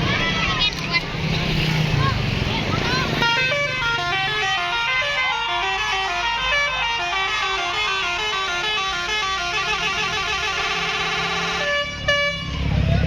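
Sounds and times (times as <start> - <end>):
bus musical horn tune: 3.2 - 12.6.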